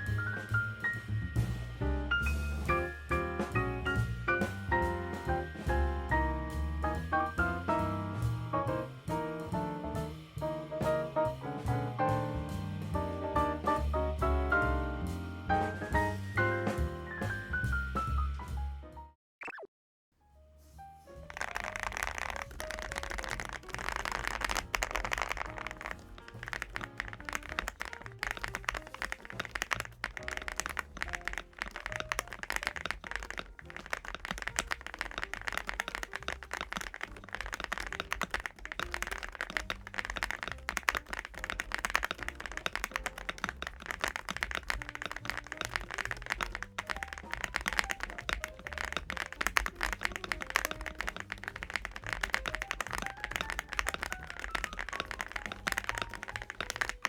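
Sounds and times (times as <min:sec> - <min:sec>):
mechanical keyboard key clacks: 0:21.3 - 0:57.0.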